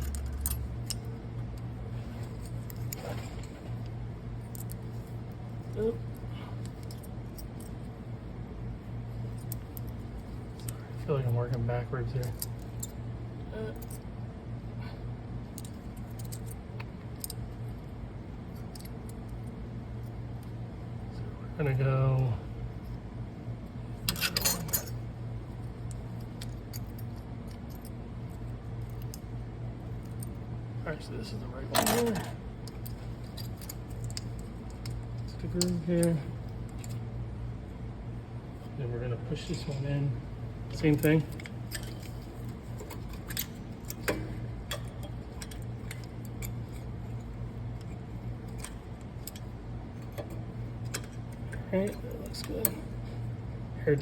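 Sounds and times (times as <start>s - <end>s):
metal clips clinking: 0.0s - 5.8s, 15.5s - 17.4s, 24.0s - 25.0s, 31.7s - 37.1s, 40.7s - 53.1s
steady low hum: 0.0s - 54.0s.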